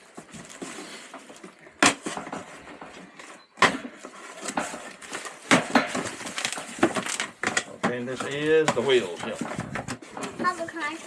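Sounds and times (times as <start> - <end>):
cardboard rustling and scraping: 0.0 - 11.0.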